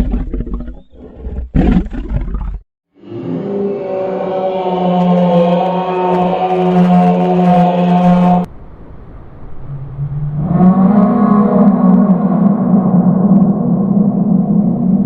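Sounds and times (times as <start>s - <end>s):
long steady dinosaur roar: 3.0s - 8.5s, 9.6s - 14.9s.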